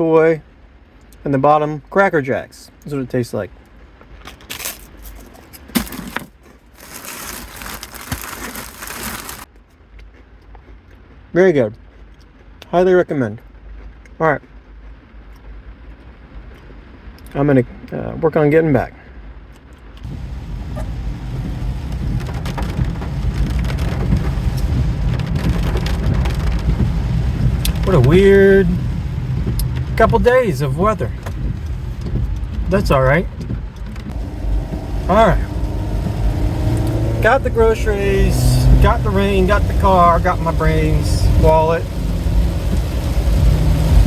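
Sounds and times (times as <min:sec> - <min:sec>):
rice cake crunching: 0:04.4 - 0:09.5
heavy rain on car roof: 0:05.7 - 0:09.5, 0:20.0 - 0:44.0
low rumble: 0:20.0 - 0:44.0.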